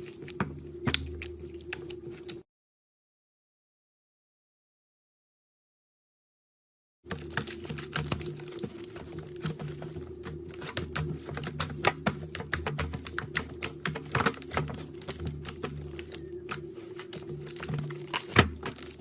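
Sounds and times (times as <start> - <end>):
slime squished by hand: 10.5 - 19.0.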